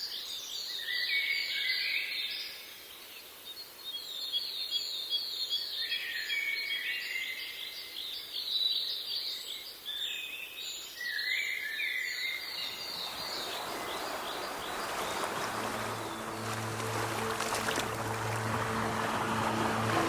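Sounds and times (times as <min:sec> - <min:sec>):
steady rushing sound: 0:12.7 - 0:20.0
low sustained music drone: 0:14.8 - 0:20.0.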